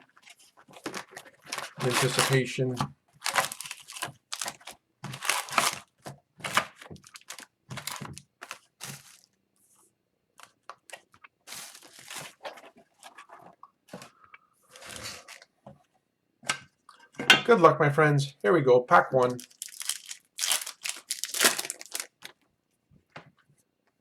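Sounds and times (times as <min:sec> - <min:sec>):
wrapper and cardboard ripping: 0:00.2 - 0:02.5, 0:03.2 - 0:09.3, 0:10.9 - 0:13.1, 0:19.2 - 0:22.4.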